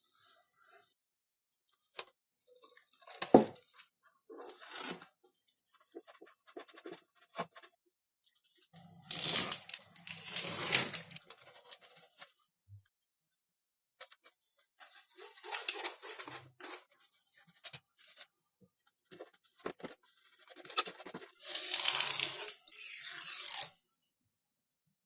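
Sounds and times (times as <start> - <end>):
rough scraping and tearing: 20.4 - 23.8.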